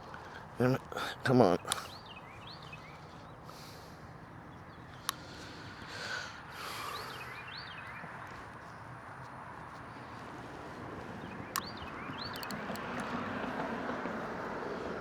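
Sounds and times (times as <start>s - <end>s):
road traffic hum: 0.0s - 15.0s
bird chirping: 1.4s - 3.5s, 6.7s - 8.8s, 11.2s - 13.1s
quick ticks: 11.6s - 13.3s
sharp click: 12.3s - 13.1s.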